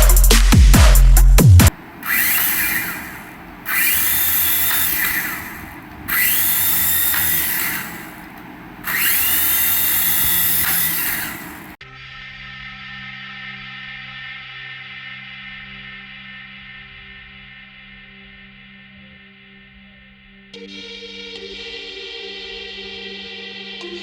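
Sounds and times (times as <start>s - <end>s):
small electric motor whirring: 1.7s - 11.8s.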